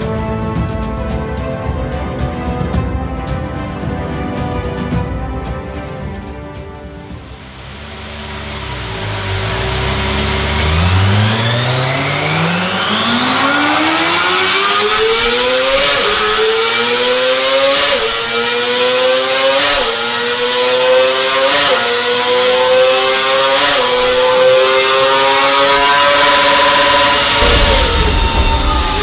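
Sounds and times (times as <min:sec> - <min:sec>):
motorcycle engine accelerating: 0:07.0 - 0:29.0.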